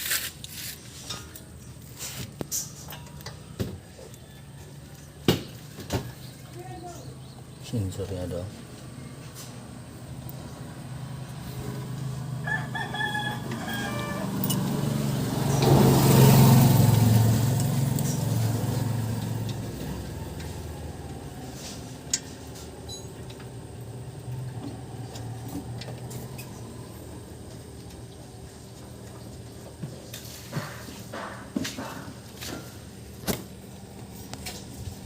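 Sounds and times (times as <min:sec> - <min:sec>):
rooster crowing: 0:03.9 - 0:05.2, 0:12.1 - 0:15.5
passing vehicle rumble: 0:06.3 - 0:29.6.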